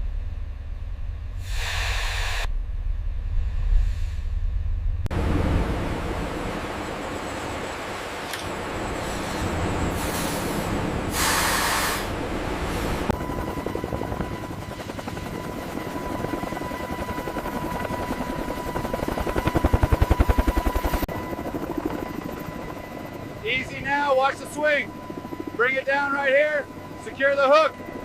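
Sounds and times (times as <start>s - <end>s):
short burst of hiss: 1.4s - 2.5s.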